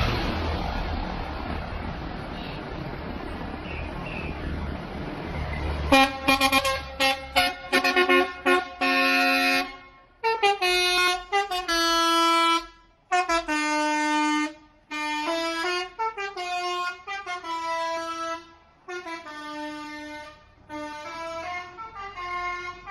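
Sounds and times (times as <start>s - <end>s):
multi-tone musical air horn: 5.9s - 22.9s.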